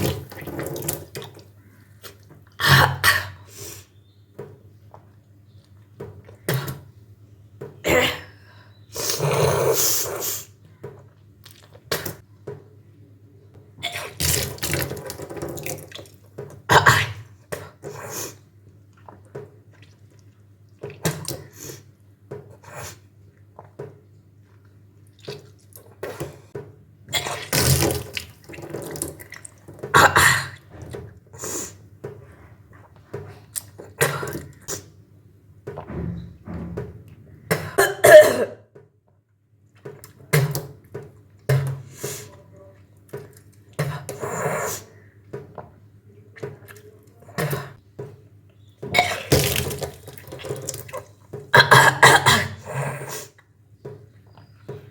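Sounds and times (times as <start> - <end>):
person retching and vomiting: 0.0 - 1.5, 2.1 - 3.5, 7.8 - 8.4, 13.7 - 17.9, 27.0 - 31.1, 33.4 - 35.0, 37.5 - 38.8, 48.8 - 53.5
person coughing and gagging: 29.9 - 30.7, 37.6 - 38.7, 48.9 - 49.6, 51.5 - 53.1
water splashing down: 49.0 - 51.2.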